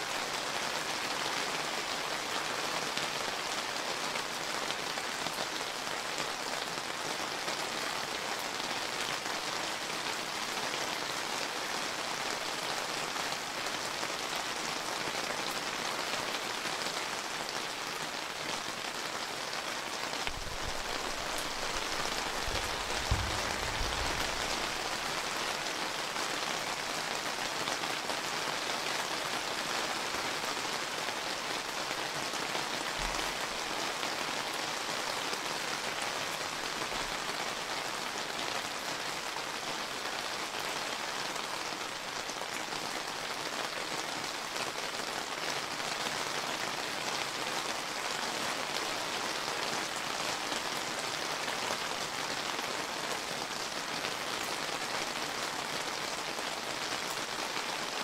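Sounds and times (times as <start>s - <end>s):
rain falling on surfaces: 0.0s - 58.0s.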